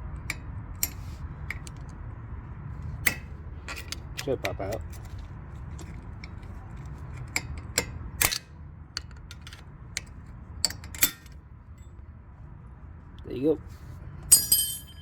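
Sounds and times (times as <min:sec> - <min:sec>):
screwdriver clicking and scraping metal: 0:03.0 - 0:08.4, 0:09.0 - 0:11.4.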